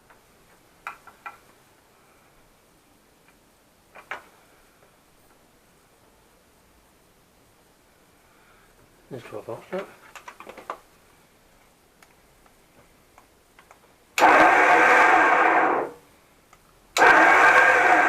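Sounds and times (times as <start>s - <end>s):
electric winch motor running: 14.2s - 16.0s, 17.0s - 18.0s.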